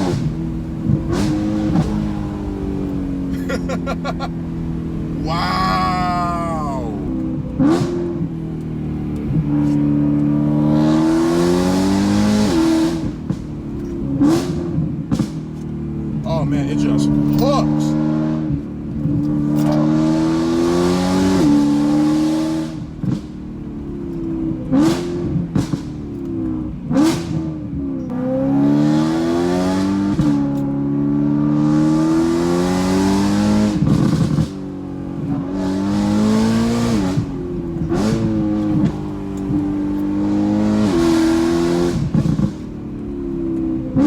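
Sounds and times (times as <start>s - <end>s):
car engine accelerating hard: 0.0s - 44.0s
exhaust cracks and pops: 13.0s - 15.8s, 23.0s - 23.5s, 24.1s - 27.4s, 33.8s - 34.7s, 42.0s - 43.8s.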